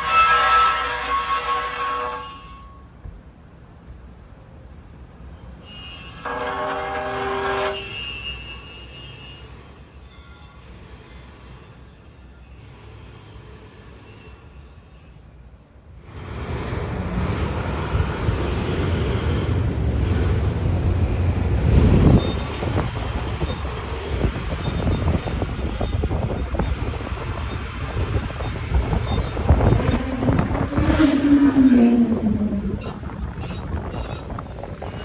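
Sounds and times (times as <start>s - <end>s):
metallic wheel screech: 0.0s - 2.9s, 5.4s - 15.5s, 20.0s - 35.0s
low vehicle rumble: 16.0s - 35.0s.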